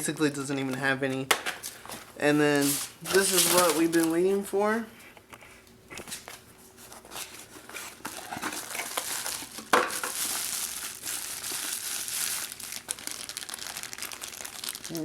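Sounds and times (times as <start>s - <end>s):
plastic packaging crinkling: 2.6s - 4.4s, 7.9s - 15.0s
sharp plastic crackle: 8.1s - 15.0s.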